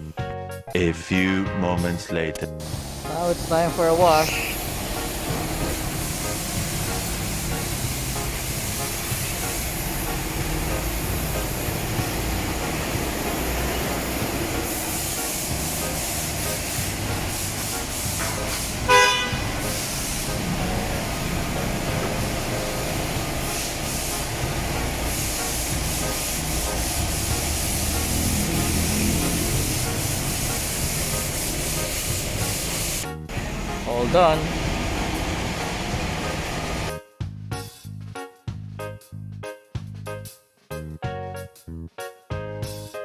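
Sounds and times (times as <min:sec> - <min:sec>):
water spraying on a car: 0:02.7 - 0:33.6, 0:34.2 - 0:36.9.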